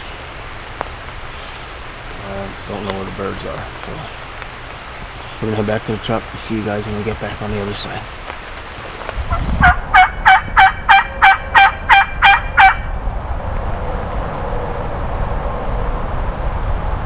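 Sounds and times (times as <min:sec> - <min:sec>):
rain hiss: 0:00.0 - 0:10.0
low rumble: 0:09.2 - 0:17.0
turkey yelps: 0:09.3 - 0:12.9.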